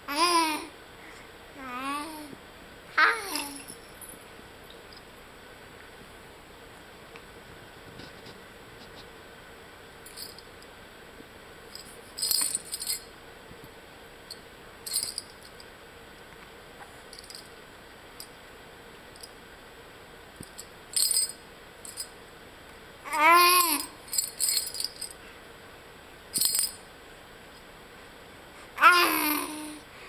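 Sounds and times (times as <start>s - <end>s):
small jingling rattle shaken: 3.3s - 4.3s, 10.0s - 10.5s, 11.7s - 13.1s, 14.3s - 15.7s, 17.1s - 17.5s, 20.4s - 22.2s, 23.6s - 25.2s, 26.3s - 26.9s.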